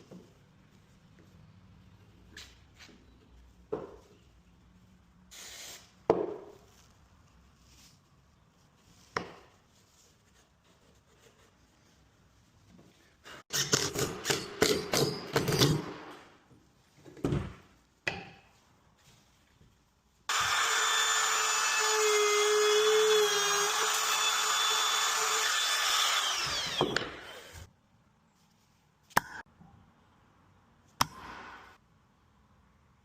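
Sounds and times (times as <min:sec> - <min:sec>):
electric router whining: 0:20.3 - 0:27.6.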